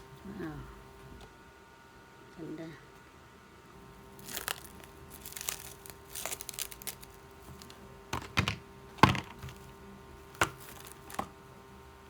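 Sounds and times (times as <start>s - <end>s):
packaging crinkling: 4.1s - 11.4s.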